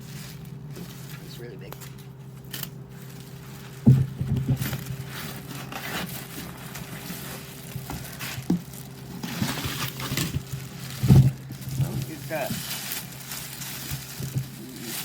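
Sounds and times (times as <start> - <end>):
crinkly packaging rustling: 0.0 - 15.0
steady low hum: 0.0 - 15.0
knock on box: 3.8 - 4.7.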